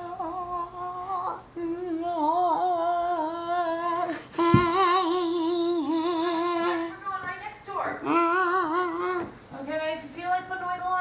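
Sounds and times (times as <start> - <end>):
high voice humming: 0.0 - 7.0, 8.0 - 9.6
brief knock: 4.5 - 4.8.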